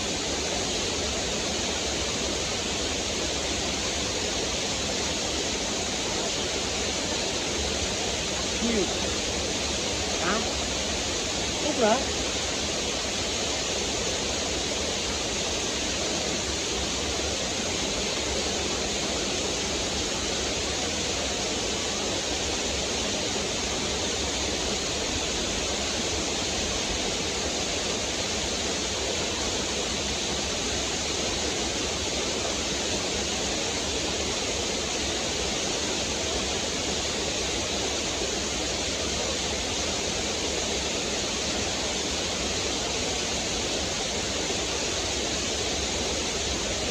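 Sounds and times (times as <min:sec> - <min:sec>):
waterfall pouring over rocks: 0:00.0 - 0:46.9.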